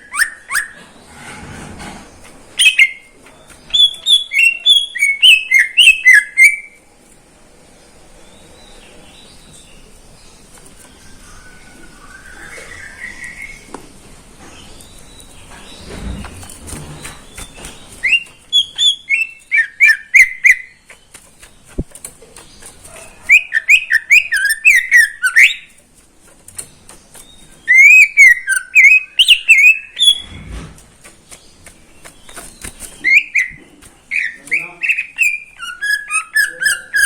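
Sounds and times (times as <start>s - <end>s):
bird singing whistled notes: 0.0s - 0.8s, 3.7s - 6.8s, 11.0s - 13.7s, 17.2s - 20.8s, 23.3s - 25.7s, 27.4s - 30.4s, 32.2s - 37.0s.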